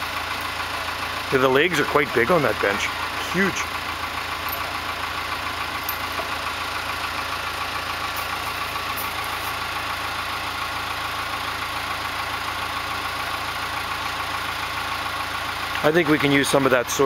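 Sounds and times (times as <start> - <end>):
backhoe engine idling: 0.0 - 17.0.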